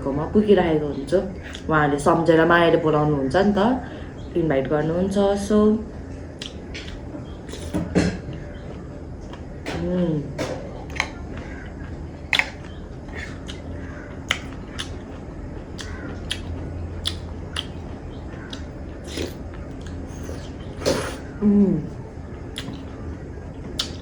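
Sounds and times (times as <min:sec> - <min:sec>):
low hum: 0:00.0 - 0:24.0
chewing and biting mouth sounds: 0:06.4 - 0:09.5, 0:10.4 - 0:21.3, 0:22.5 - 0:24.0.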